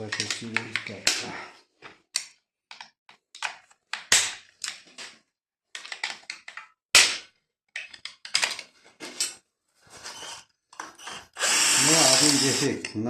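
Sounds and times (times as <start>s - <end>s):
plastic parts knocking: 2.2s - 9.3s.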